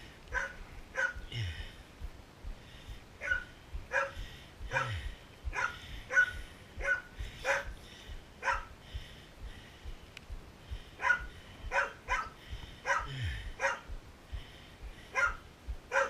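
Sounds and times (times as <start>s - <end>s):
dog barking: 0.3s - 1.3s, 3.2s - 7.8s, 8.4s - 8.7s, 11.0s - 13.9s, 15.1s - 16.0s.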